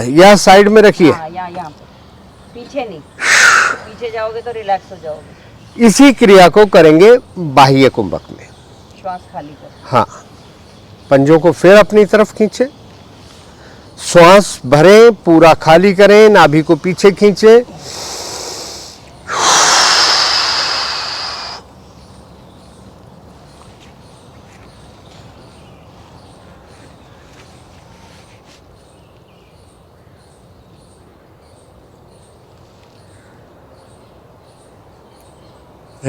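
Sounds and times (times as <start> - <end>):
low background hiss: 0.0 - 36.0
person exhaling hard: 3.2 - 4.0, 17.8 - 21.7.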